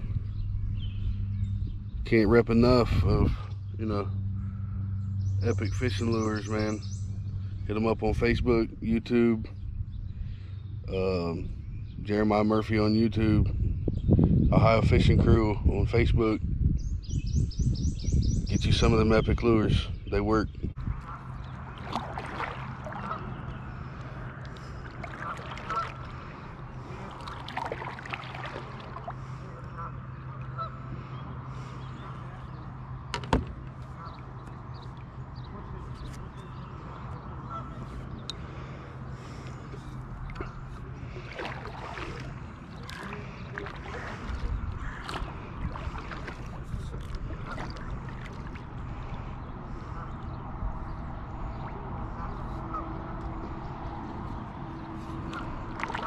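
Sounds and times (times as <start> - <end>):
low rumble: 0.0 - 35.8
steady low hum: 0.0 - 56.0
waterfowl honking: 21.0 - 32.3, 37.4 - 38.0, 41.3 - 46.5, 47.3 - 48.6, 52.2 - 53.2
knocks and clicks on kayak: 33.1 - 33.9.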